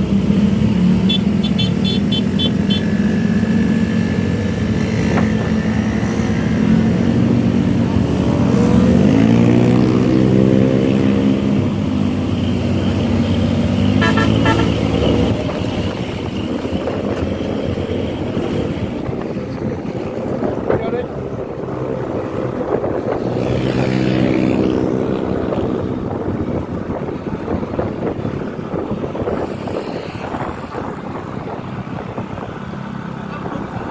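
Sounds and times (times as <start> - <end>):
bus engines running: 0.0 - 33.9
bus horn short toots: 1.1 - 2.8, 14.0 - 15.0.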